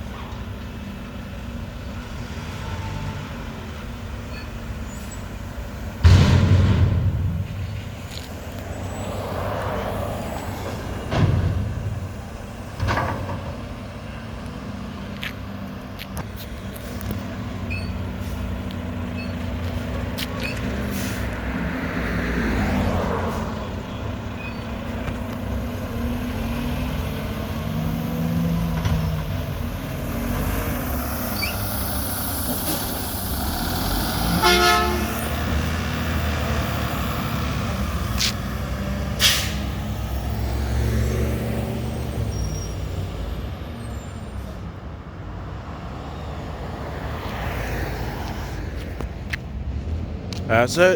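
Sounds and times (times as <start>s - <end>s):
air brake hiss: 20.9s - 21.3s, 39.2s - 39.7s
truck horn toot: 34.2s - 35.4s.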